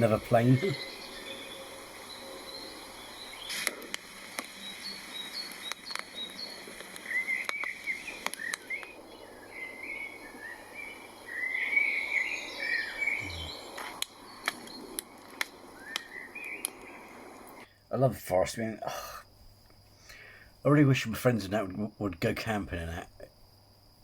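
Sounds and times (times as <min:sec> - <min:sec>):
birds chirping and warbling: 0:00.0 - 0:17.6
sharp clicks: 0:03.5 - 0:04.6, 0:05.5 - 0:09.0, 0:13.7 - 0:17.6.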